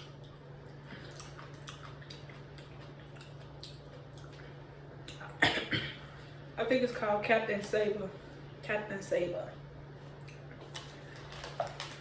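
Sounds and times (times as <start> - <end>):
wet chewing and mouth clicks: 0.0 - 5.3.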